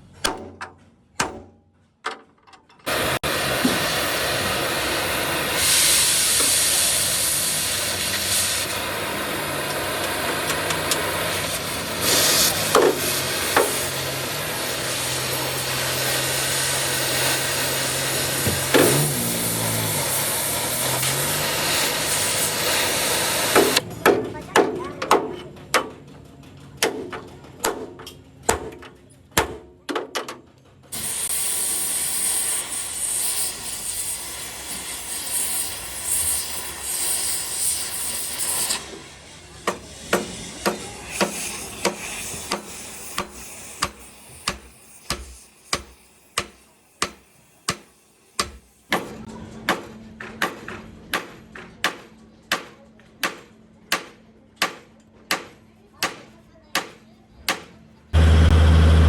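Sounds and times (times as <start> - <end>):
loud steady hiss: 2.9 - 23.8, 31.0 - 49.0, 58.2 - 59.0.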